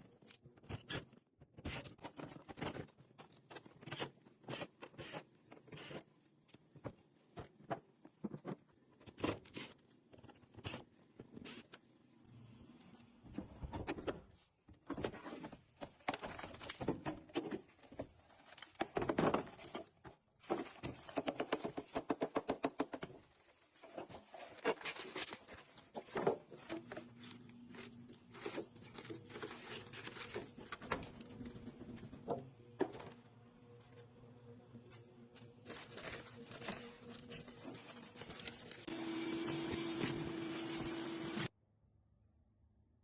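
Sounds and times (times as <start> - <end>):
paper-like rustles: 35.3 - 38.9.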